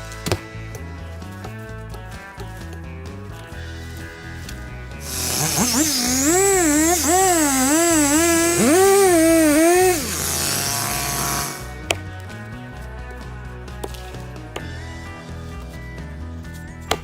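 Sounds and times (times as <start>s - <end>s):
small motor revving: 5.0s - 11.8s.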